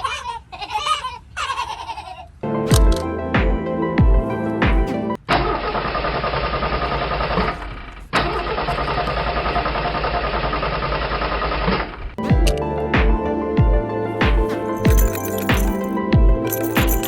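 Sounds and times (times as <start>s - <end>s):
background music: 2.4s - 5.2s, 12.2s - 17.0s.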